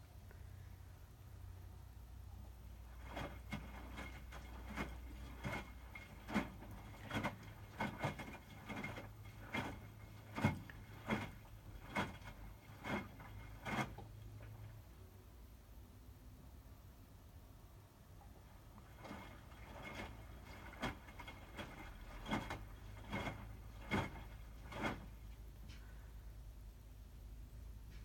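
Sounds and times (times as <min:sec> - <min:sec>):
washing machine motor hum: 0:01.0 - 0:28.0
knocks and clunks of tumbling load: 0:02.7 - 0:14.8, 0:18.4 - 0:26.1.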